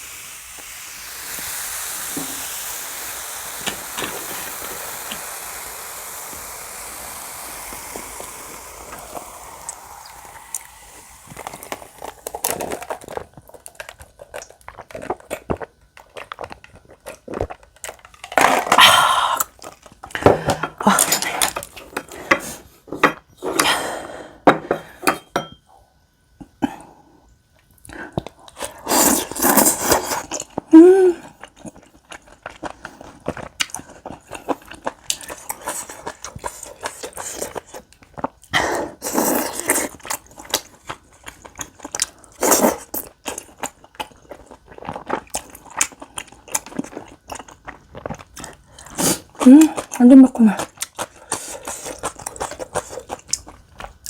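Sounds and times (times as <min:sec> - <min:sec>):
chewing and slurping: 0:00.6 - 0:18.4, 0:28.2 - 0:30.7, 0:31.3 - 0:54.0.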